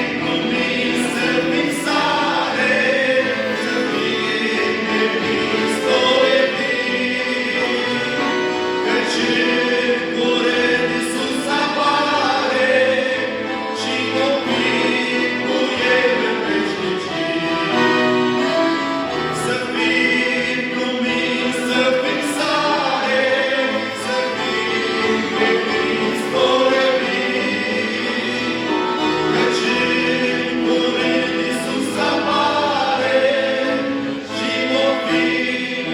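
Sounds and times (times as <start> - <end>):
choir singing in harmony: 0.0 - 35.9.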